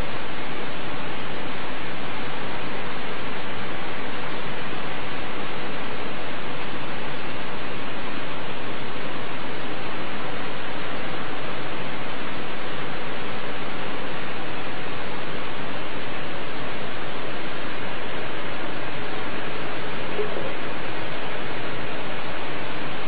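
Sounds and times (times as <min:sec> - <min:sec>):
loud steady hiss: 0:00.0 - 0:23.0.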